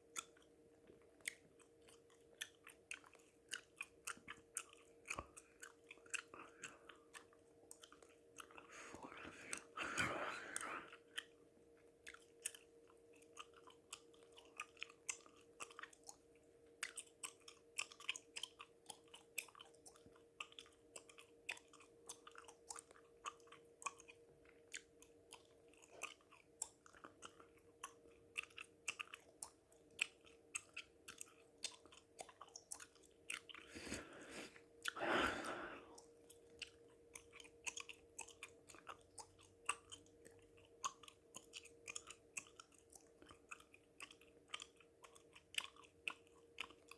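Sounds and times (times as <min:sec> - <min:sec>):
gum chewing mouth clicks: 0:00.0 - 0:46.9
heavy drawn-out breath: 0:08.7 - 0:10.9, 0:33.7 - 0:36.0.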